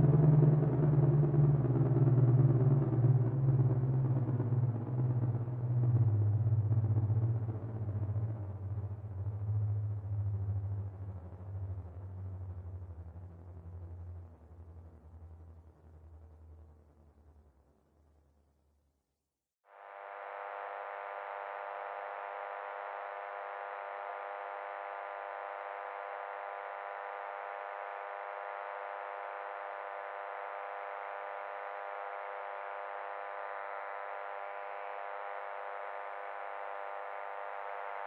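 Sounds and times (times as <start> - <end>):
electronic buzz: 19.7 - 38.0.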